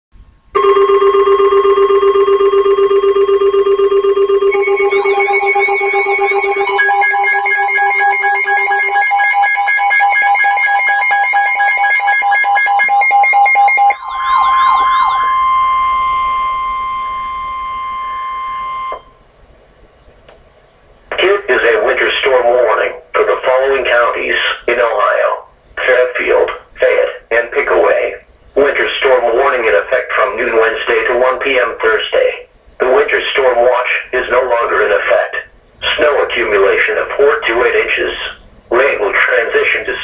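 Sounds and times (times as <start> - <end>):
steady alarm tones: 0.6 - 19.3
pulsing beeps: 0.7 - 19.2.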